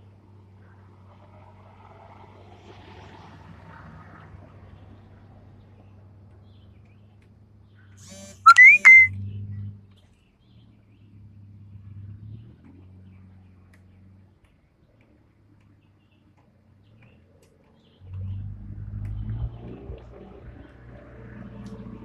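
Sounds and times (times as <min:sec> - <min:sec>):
whistled chirps rising in pitch: 0:08.1 - 0:09.1.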